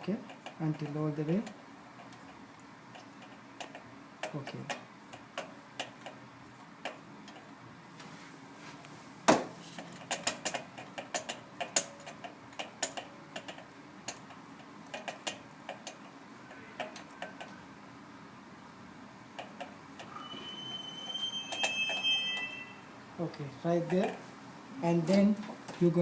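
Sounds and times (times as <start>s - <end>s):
ratchet wrench clicking: 10.0s - 16.1s.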